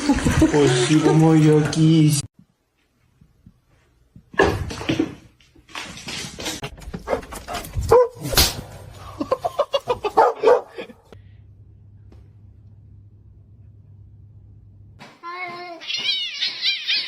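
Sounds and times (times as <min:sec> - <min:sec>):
dog barking and yelping: 0:07.1 - 0:08.3, 0:10.1 - 0:10.9, 0:16.2 - 0:17.0.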